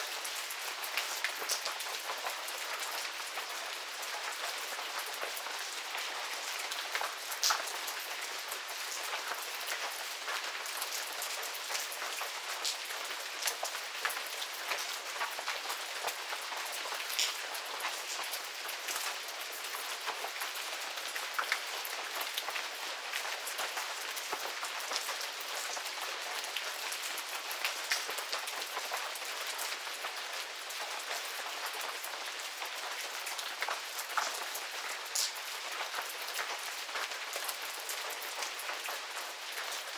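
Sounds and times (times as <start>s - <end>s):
rain falling: 0.0s - 39.9s
raindrops ticking: 9.7s - 19.0s, 32.6s - 38.8s.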